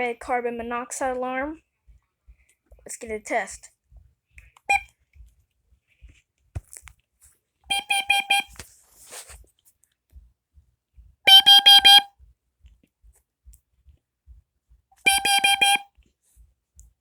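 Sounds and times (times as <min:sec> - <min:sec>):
carbon monoxide alarm beeps: 0:07.7 - 0:08.6, 0:11.3 - 0:12.1, 0:15.1 - 0:15.8.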